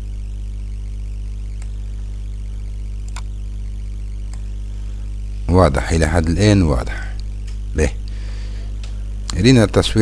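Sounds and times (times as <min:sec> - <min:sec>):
low electrical hum: 0:00.0 - 0:10.0
computer mouse clicks: 0:03.0 - 0:03.3, 0:04.3 - 0:04.5.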